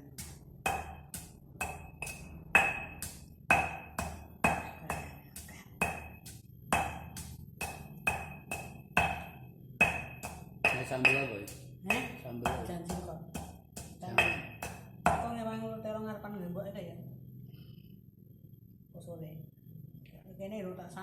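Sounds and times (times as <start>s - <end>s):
knife chopping on cutting board: 0.2s - 15.2s.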